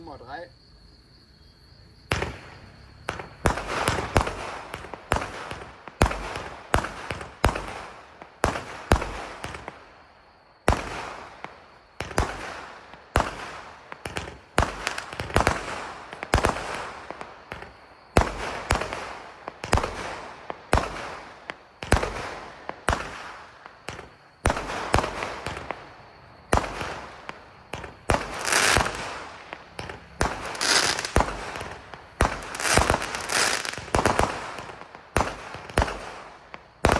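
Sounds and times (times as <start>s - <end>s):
firework crackling: 2.1s - 36.9s.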